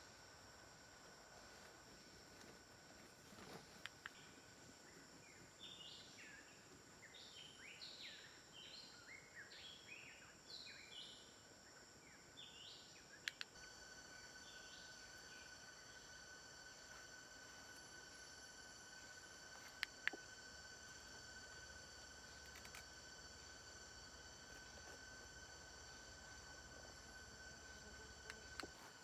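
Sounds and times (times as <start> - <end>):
high-pitched whine: 0.0 - 29.0
sharp clicks: 13.2 - 13.6, 22.4 - 22.9.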